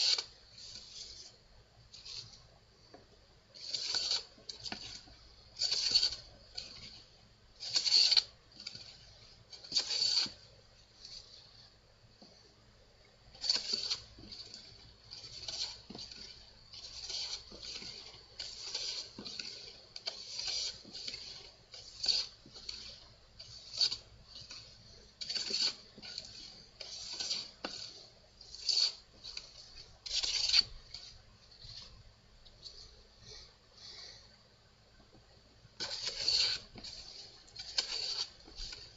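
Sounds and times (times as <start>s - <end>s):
hand plane swishing strokes on wood: 9.6s - 10.4s, 13.4s - 24.6s, 25.2s - 30.7s, 35.8s - 38.9s.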